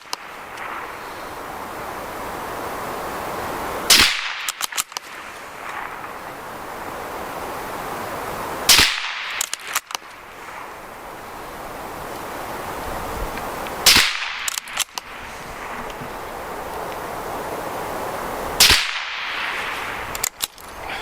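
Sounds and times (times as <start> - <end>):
suppressed rifle shots: 8.7 - 9.8, 13.8 - 15.0, 18.6 - 19.9.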